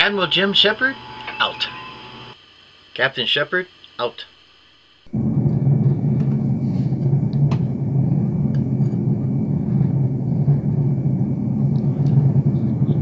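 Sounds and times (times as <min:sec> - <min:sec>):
low rumbling drone: 0:00.0 - 0:02.4, 0:04.3 - 0:13.0.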